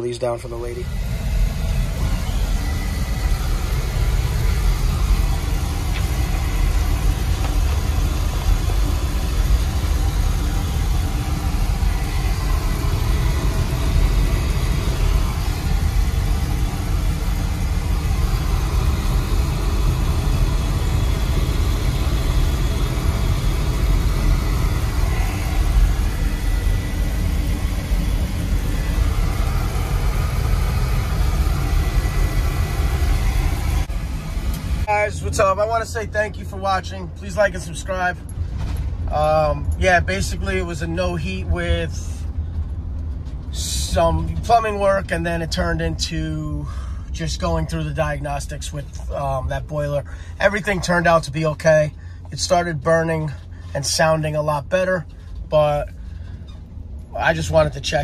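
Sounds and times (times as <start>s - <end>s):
faint high whine: 0.0s - 58.0s
oil burner rumbling: 0.0s - 58.0s.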